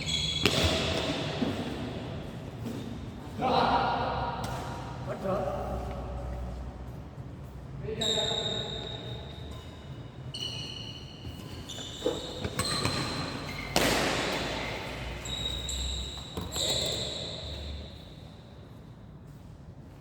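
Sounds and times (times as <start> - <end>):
shoes squeaking on court floor: 0.0 - 3.5, 4.4 - 19.8
racket hitting shuttlecock: 0.4 - 1.8, 12.4 - 15.2.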